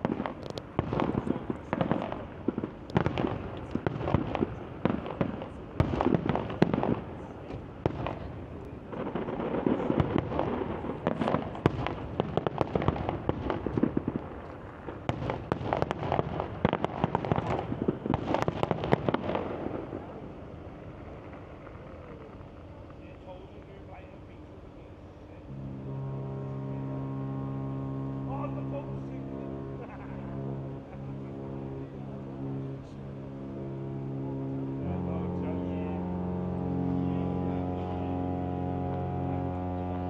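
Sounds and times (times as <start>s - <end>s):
fireworks banging and crackling: 0.0s - 23.8s.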